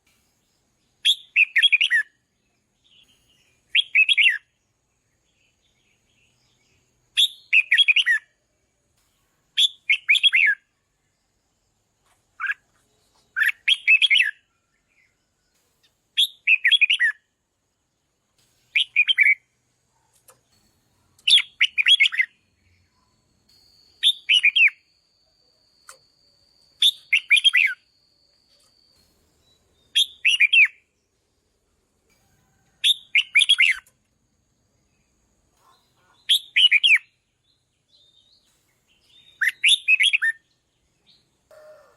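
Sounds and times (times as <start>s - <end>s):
bulbul singing warbled phrases: 26.8s - 27.8s.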